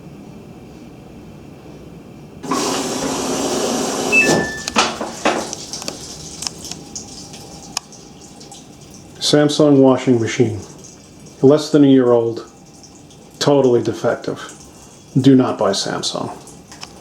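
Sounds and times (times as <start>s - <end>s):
washing machine hum: 0.0s - 17.0s
washing machine clicks and knocks: 4.1s - 6.0s.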